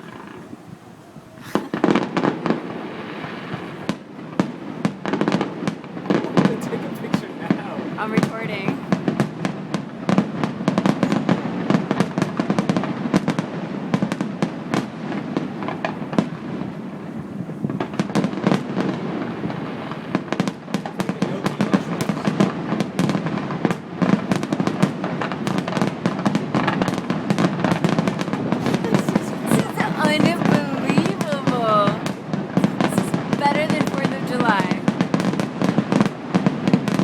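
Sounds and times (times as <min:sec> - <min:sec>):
fireworks bangs and crackles: 0:00.0 - 0:37.0.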